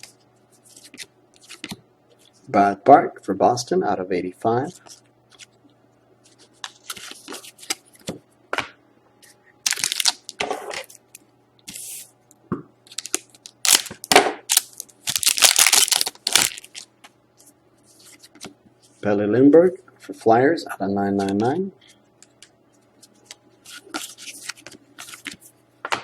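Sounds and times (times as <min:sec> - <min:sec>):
faint electrical hum: 0:00.0 - 0:26.0
card wrappers crinkling and tearing: 0:09.6 - 0:11.0, 0:12.9 - 0:16.9.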